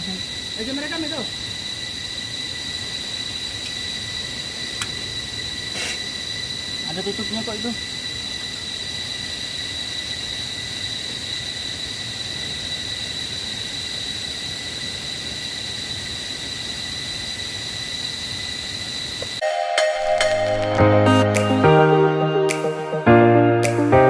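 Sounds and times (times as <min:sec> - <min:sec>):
constant hiss: 0:00.0 - 0:24.0
insect chorus droning: 0:00.0 - 0:24.0.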